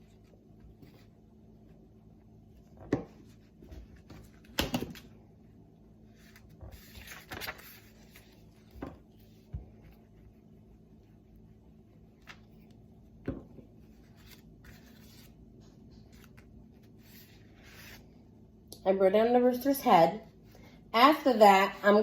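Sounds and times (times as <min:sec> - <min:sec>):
paper rustling: 0:06.1 - 0:10.4, 0:13.8 - 0:18.1.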